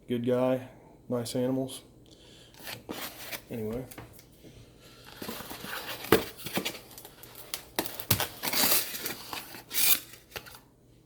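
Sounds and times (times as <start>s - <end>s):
packing crinkling and rustling: 5.0s - 10.6s.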